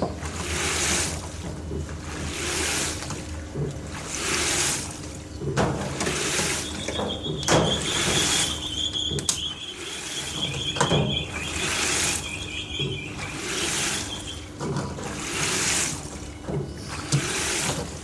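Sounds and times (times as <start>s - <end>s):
laundry sloshing in washing machine: 0.0s - 18.0s
high squeal: 6.6s - 14.5s.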